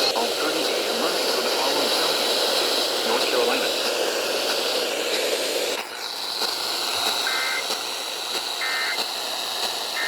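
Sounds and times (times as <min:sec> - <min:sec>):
radio hiss: 0:00.0 - 0:10.0
warbling two-tone digital data bursts: 0:07.2 - 0:07.7, 0:08.6 - 0:09.1.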